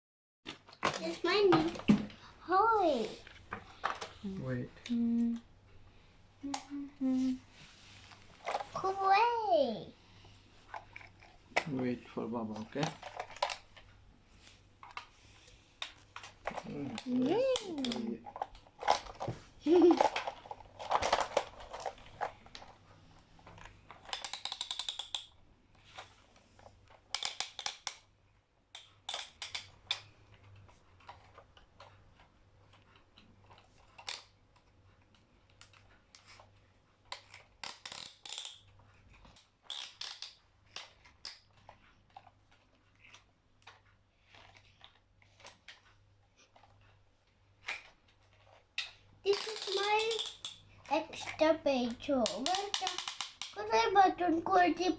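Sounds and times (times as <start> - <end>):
plastic toy clicks and taps: 24.0 - 25.4, 27.1 - 28.1, 28.7 - 30.1, 37.1 - 38.7, 39.3 - 41.4, 48.8 - 53.9.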